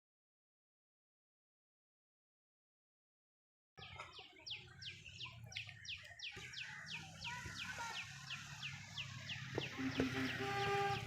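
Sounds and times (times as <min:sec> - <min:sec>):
bird chirping: 0:03.8 - 0:11.0.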